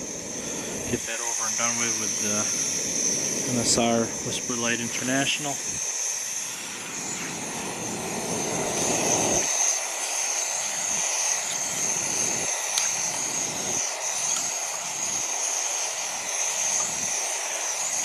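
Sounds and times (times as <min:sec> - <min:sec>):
stove burner hissing: 0:00.0 - 0:18.0
deeper rushing: 0:06.7 - 0:09.7.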